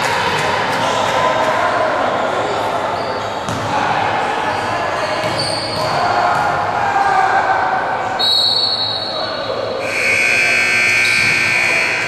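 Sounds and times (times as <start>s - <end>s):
spectator chatter echoing: 0.0s - 12.0s
basketball bouncing on court: 3.4s - 3.7s, 5.2s - 6.6s, 10.9s - 11.6s.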